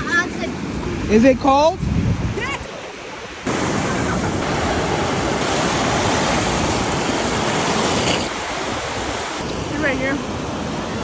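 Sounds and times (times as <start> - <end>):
ocean surf breaking: 2.4 - 11.0.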